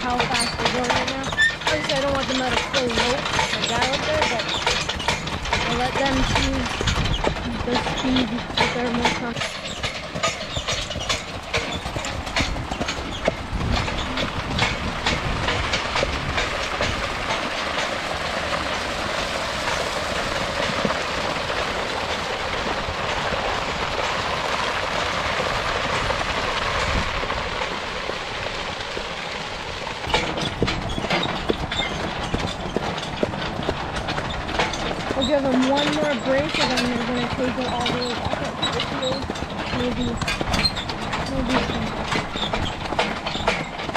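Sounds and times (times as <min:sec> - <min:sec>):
metal clanks and knocks: 0:00.0 - 0:18.8, 0:30.0 - 0:43.9
metal track scraping over ground: 0:00.0 - 0:43.9.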